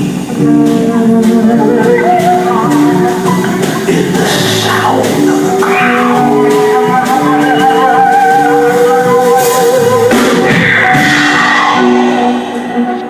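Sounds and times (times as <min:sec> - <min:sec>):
song with instruments: 0:00.0 - 0:13.0.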